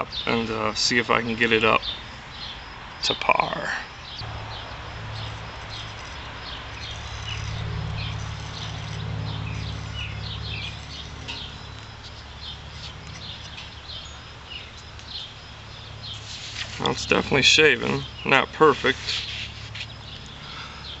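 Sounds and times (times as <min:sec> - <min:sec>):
steady low rumble: 0:04.0 - 0:20.6.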